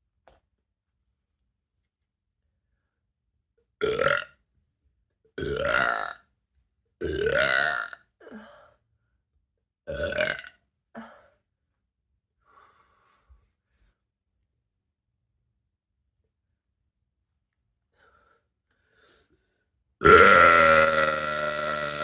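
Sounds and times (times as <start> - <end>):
woman belching loudly: 5.4 - 6.2, 7.0 - 7.9, 20.0 - 22.0
faint breath: 12.4 - 14.0, 17.9 - 19.7.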